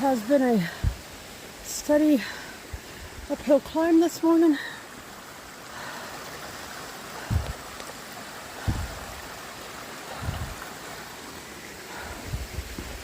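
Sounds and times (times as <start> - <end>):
brook rushing over boulders: 10.0 - 11.3.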